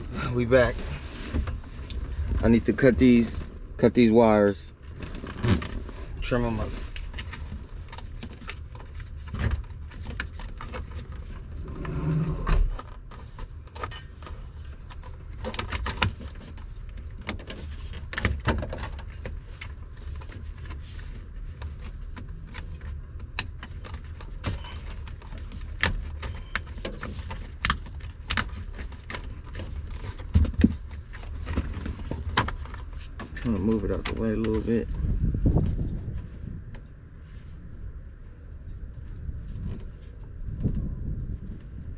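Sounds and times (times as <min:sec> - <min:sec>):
steady low rumble: 0:00.0 - 0:15.4, 0:27.4 - 0:41.9
handling of wires: 0:00.0 - 0:41.9.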